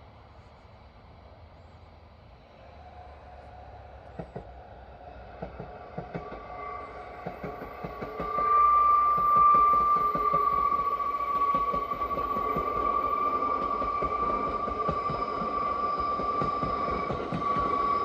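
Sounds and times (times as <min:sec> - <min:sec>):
diesel locomotive approaching: 0:00.0 - 0:18.0
wheels clicking over rail joints: 0:05.2 - 0:18.0
steady whine: 0:05.6 - 0:18.0.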